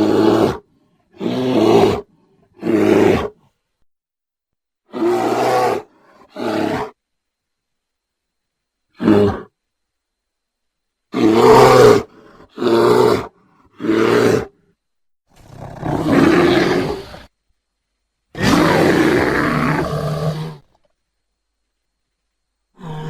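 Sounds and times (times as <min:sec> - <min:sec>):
bear growling: 0:00.0 - 0:03.5, 0:04.9 - 0:07.0, 0:09.0 - 0:09.5, 0:11.1 - 0:14.7, 0:15.3 - 0:17.3, 0:18.3 - 0:20.9, 0:22.8 - 0:23.0.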